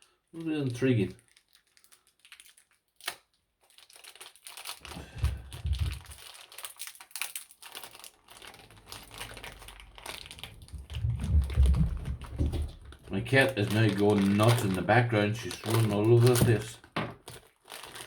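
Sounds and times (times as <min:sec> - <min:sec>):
packaging crinkling and rustling: 0:00.1 - 0:18.0
dull low thumps: 0:05.0 - 0:06.2, 0:10.4 - 0:13.1
small clattering handling noises: 0:15.5 - 0:17.5.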